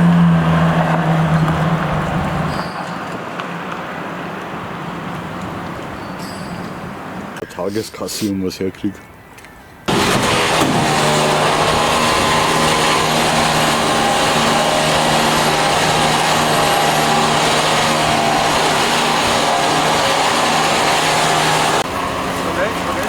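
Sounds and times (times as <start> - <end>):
car engine running: 0.0 - 2.6, 9.9 - 23.0.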